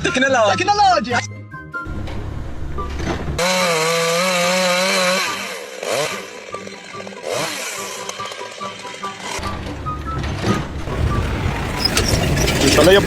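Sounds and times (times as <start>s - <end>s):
rough machine noise: 3.4s - 9.4s, 10.9s - 13.0s
small motor running: 3.4s - 9.4s.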